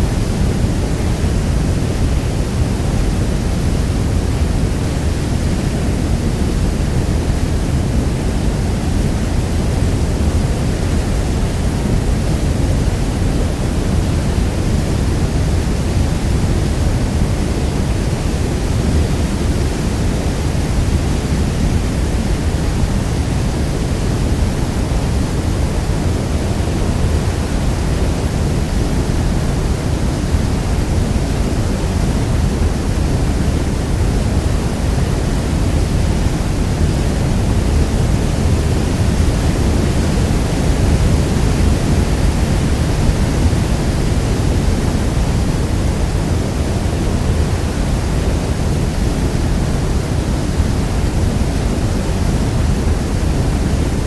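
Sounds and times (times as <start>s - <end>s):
waterfall roaring: 0.0s - 54.0s.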